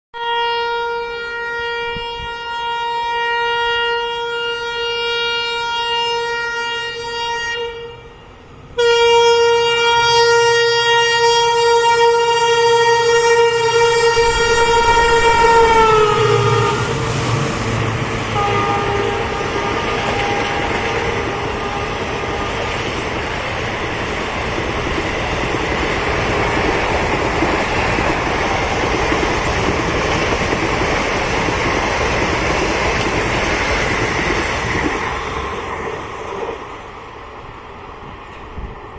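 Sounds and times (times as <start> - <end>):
locomotive horn blasts: 0.2 - 17.5, 18.3 - 23.0
passing train rumbling: 0.2 - 38.9.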